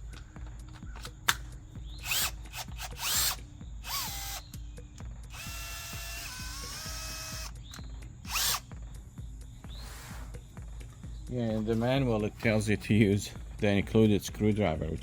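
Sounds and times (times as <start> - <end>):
power drill whirring: 2.0 - 4.4, 5.3 - 7.6, 8.3 - 8.6.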